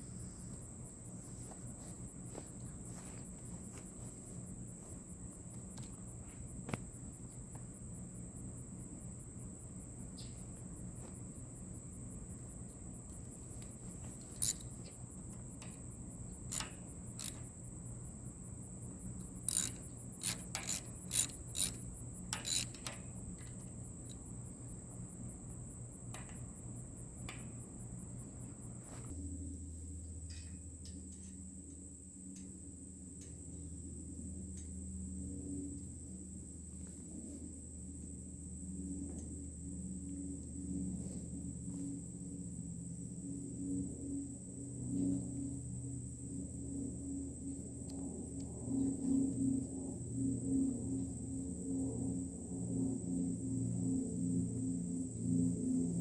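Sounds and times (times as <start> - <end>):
crickets chirring: 0.0 - 56.0
sharp clicks: 16.5 - 17.5, 19.2 - 23.7.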